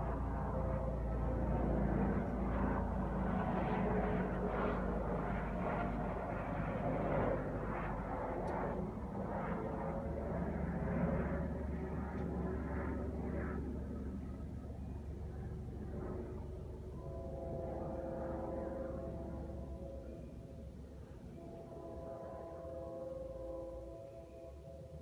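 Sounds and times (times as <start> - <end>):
helicopter rotor and engine rumble: 0.0 - 25.0.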